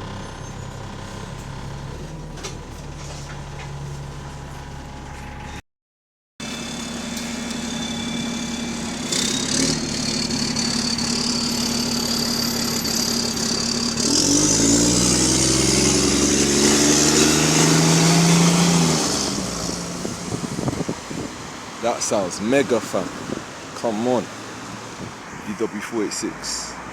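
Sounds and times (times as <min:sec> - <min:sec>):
bus diesel engine running: 0:00.0 - 0:05.6, 0:06.4 - 0:26.9
climbing whine: 0:06.4 - 0:21.2.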